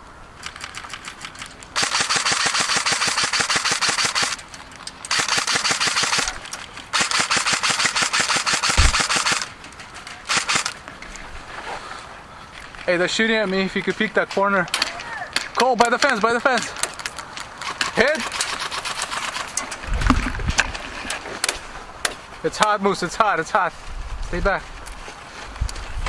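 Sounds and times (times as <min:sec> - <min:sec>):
airsoft rifle bursts: 0:00.4 - 0:04.5, 0:05.1 - 0:09.6, 0:10.2 - 0:10.8
dull thump: 0:08.8 - 0:09.1.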